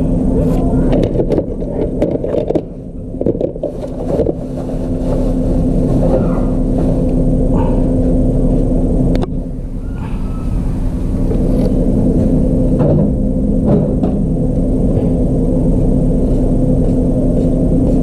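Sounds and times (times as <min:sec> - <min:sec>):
refrigerator humming: 0:00.0 - 0:18.0
sharp clicks and knocks: 0:00.9 - 0:04.4.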